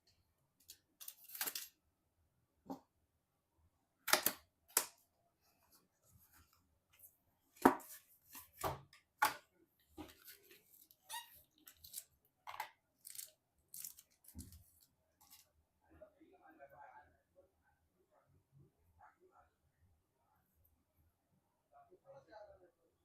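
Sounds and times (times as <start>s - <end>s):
clicks and knocks of handled parts: 0.6s - 1.8s.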